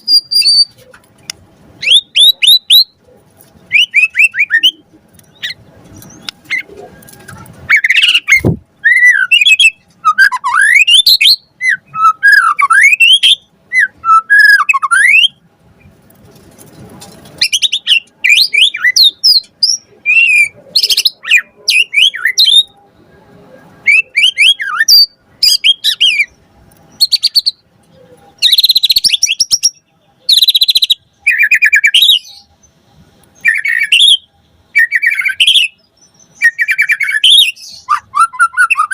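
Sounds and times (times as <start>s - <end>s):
bird singing whistles and warbles: 0.0s - 0.8s, 1.8s - 3.0s, 3.7s - 15.4s, 17.4s - 22.8s, 23.8s - 32.8s, 33.4s - 38.9s.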